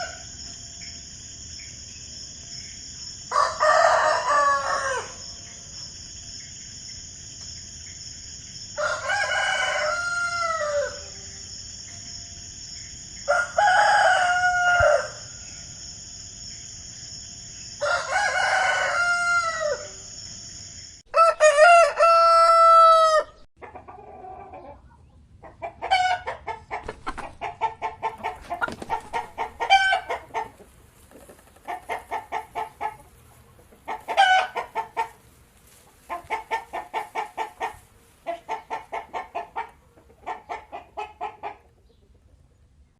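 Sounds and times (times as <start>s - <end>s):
rooster crowing: 0.0s - 0.4s, 3.3s - 5.5s, 8.7s - 11.4s, 13.2s - 15.6s, 17.8s - 20.2s, 21.1s - 23.5s, 27.7s - 30.5s, 34.1s - 34.7s
chicken clucking: 23.6s - 42.6s.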